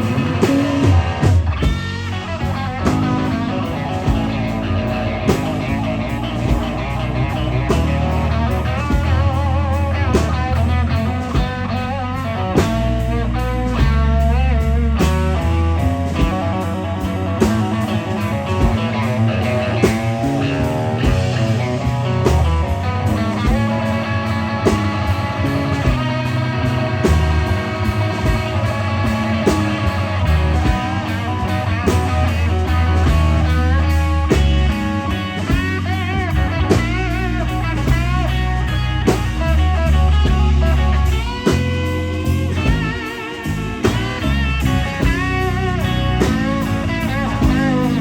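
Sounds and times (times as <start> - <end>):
blues band playing: 0.0 - 48.0
electric guitar solo: 0.0 - 48.0.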